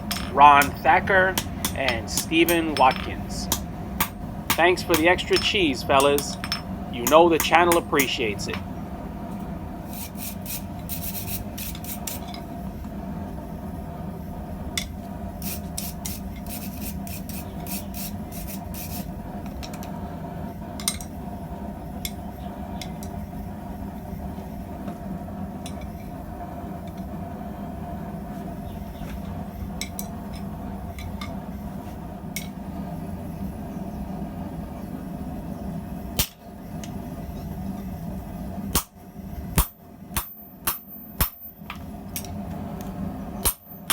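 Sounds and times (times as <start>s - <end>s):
forge air blower humming: 0.0s - 43.9s
metallic clicks and scrapes: 9.9s - 12.4s.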